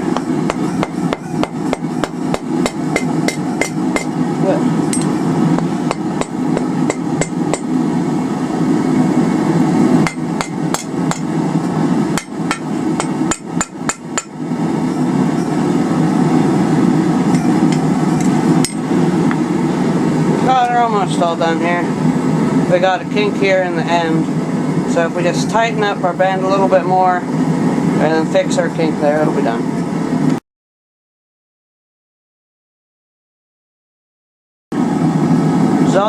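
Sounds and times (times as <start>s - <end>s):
hammer striking metal on anvil: 0.0s - 4.2s, 4.9s - 7.7s, 10.0s - 11.3s, 12.1s - 14.4s, 17.3s - 18.9s.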